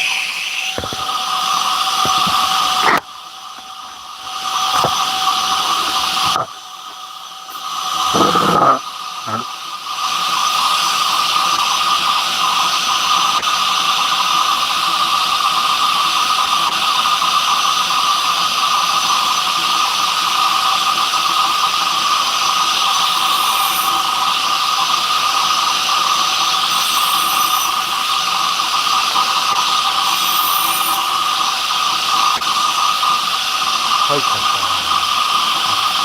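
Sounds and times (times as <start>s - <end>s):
power tool motor whining: 0.0s - 9.4s, 17.8s - 36.0s.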